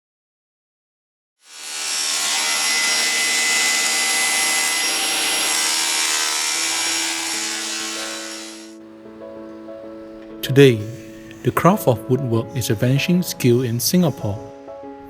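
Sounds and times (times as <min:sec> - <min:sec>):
power tool working wood: 0:01.4 - 0:08.8.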